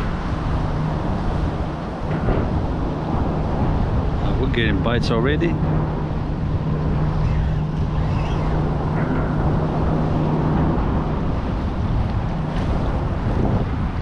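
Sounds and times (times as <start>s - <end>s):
low engine hum: 0.0s - 14.0s
wind rumbling on microphone: 0.0s - 14.0s.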